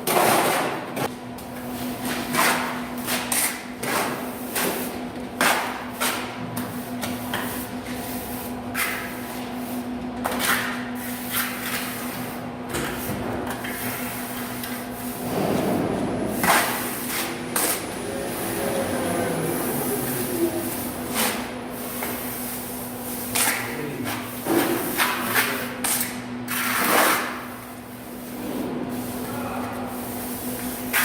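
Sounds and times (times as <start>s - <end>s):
steady low hum: 0.2s - 26.4s
trowel scraping wet plaster: 19.8s - 22.2s, 23.3s - 27.5s.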